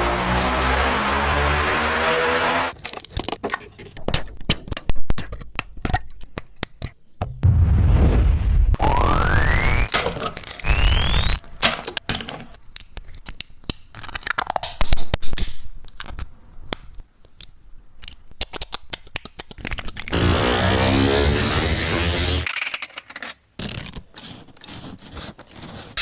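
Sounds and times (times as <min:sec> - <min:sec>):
stepper motors whining: 0:08.8 - 0:12.1, 0:20.1 - 0:22.5.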